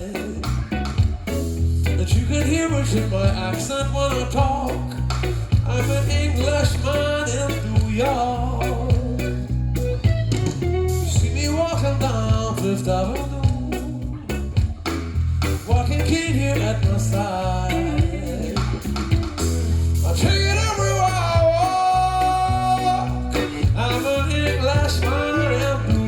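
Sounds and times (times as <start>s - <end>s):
deep sustained bass notes: 0.0s - 26.0s
person singing: 2.0s - 10.5s, 15.7s - 26.0s
song over loudspeakers: 20.0s - 26.0s
drum hits: 23.4s - 24.1s.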